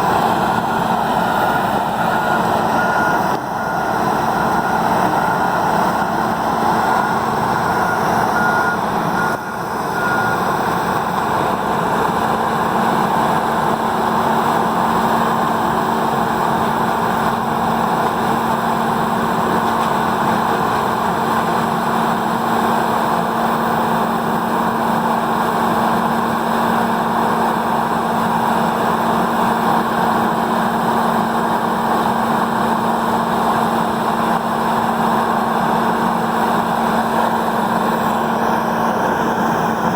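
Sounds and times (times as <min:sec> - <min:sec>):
reversing alarm beeping: 0:01.1 - 0:10.9.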